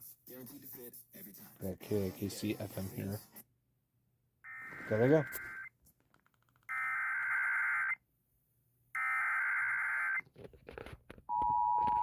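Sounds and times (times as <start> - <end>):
steady attention tone: 4.5 - 5.7.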